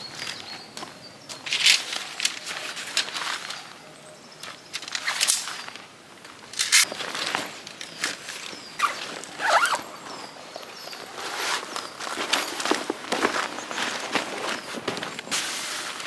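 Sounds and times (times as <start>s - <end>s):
rustling and scuffing: 0.0s - 16.0s.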